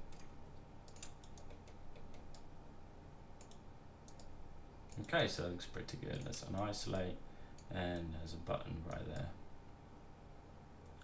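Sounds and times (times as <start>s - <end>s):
faint steady hum: 0.0s - 11.0s
computer mouse and keyboard clicks: 0.9s - 2.5s, 3.4s - 4.3s.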